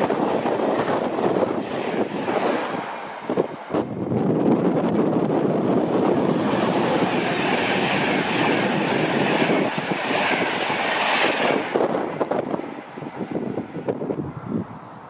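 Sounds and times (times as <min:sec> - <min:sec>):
fast train passing: 0:00.0 - 0:14.8
train wheel clatter: 0:05.8 - 0:14.0.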